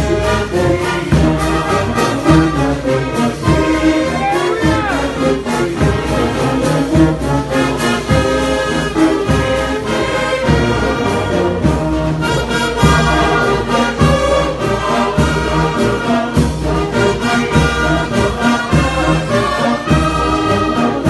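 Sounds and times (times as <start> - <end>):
brass band playing chords: 0.0 - 21.0
steady drum beat: 0.0 - 21.0.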